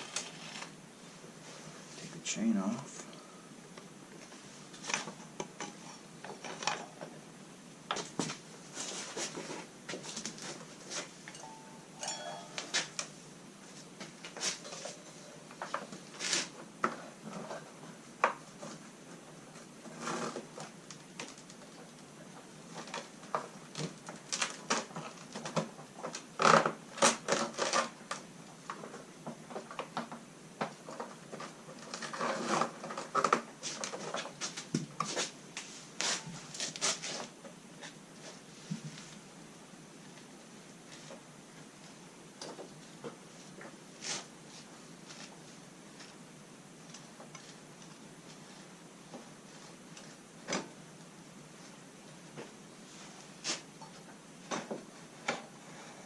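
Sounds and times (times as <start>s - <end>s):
brief ringing metal tones: 11.3s - 12.8s.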